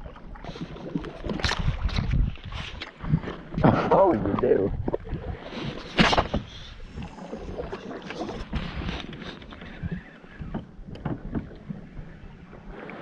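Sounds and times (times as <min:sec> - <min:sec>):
wind and water: 0:00.0 - 0:13.0
small knocks in canoe: 0:07.7 - 0:11.7.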